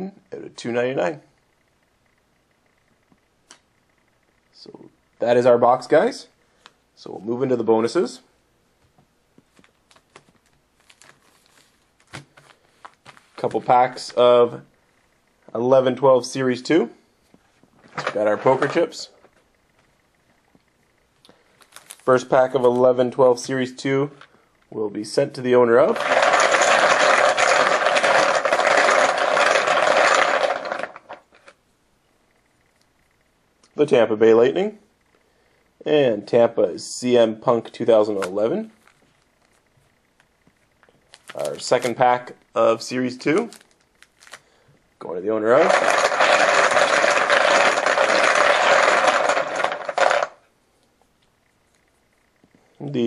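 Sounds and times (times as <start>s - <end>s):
poker chips clattering: 18.0s - 18.8s, 25.8s - 31.6s, 45.6s - 50.4s.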